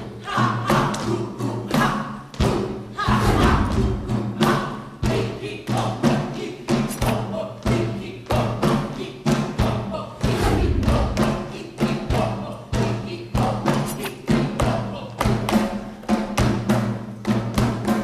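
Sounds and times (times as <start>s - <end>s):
heavy steady drum beat: 3.0s - 6.3s, 9.6s - 14.8s.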